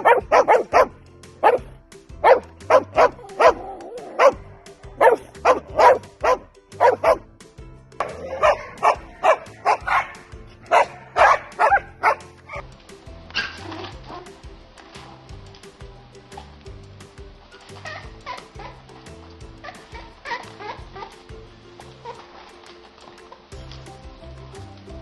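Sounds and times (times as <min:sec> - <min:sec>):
dog barking: 0:00.0 - 0:07.2, 0:08.1 - 0:12.6, 0:13.4 - 0:14.3
background music with bass line: 0:00.0 - 0:25.0.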